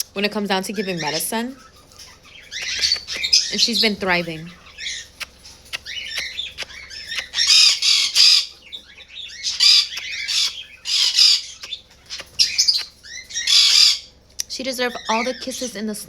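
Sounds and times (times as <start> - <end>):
parrot harsh squawks: 5.8 - 14.1.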